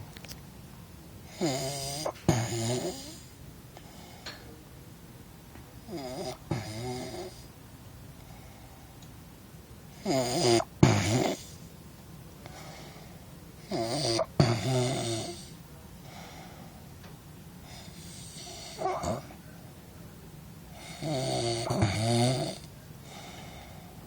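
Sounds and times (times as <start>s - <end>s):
person snoring: 1.3s - 3.2s, 5.9s - 7.4s, 10.0s - 11.5s, 13.7s - 15.5s, 17.7s - 19.4s, 20.8s - 23.6s.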